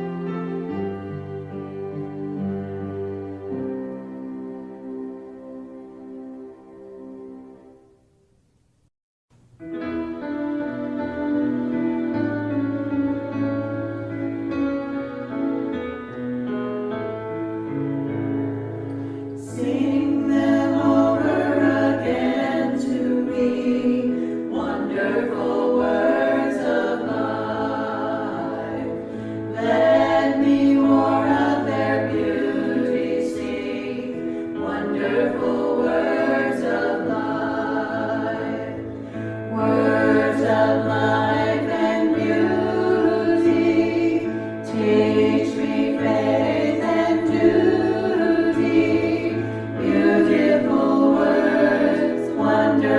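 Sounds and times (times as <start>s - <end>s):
low instrumental accompaniment: 0.0s - 7.8s, 9.6s - 52.9s
group singing worship song: 19.3s - 52.9s.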